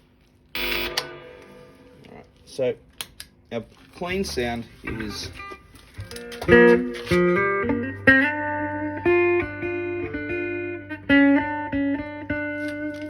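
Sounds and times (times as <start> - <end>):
clean electric guitar chords: 0.6 - 2.4, 5.3 - 13.0.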